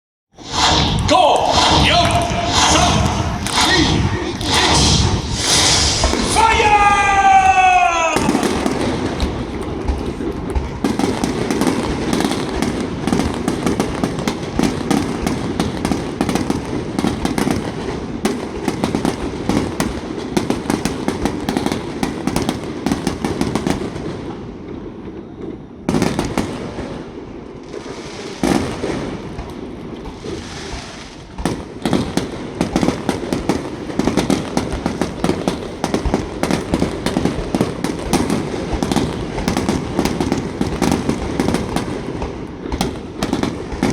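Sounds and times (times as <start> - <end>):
sharp firework bang: 0.4 - 9.4
fireworks bursting and crackling: 0.4 - 43.9.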